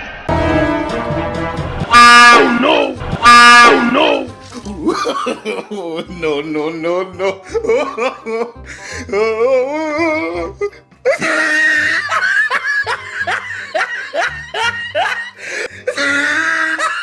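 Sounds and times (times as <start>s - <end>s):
background music: 0.3s - 17.0s.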